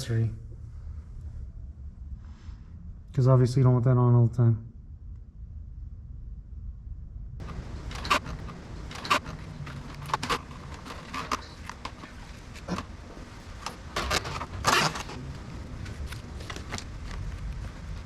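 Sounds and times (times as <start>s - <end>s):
steady low hum: 0.0s - 18.0s
rustling scrape: 7.4s - 18.0s.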